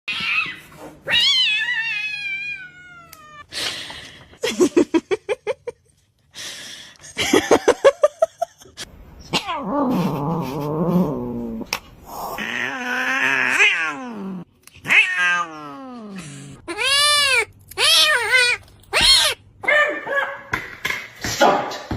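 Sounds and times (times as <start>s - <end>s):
cat yowling: 16.7s - 20.0s.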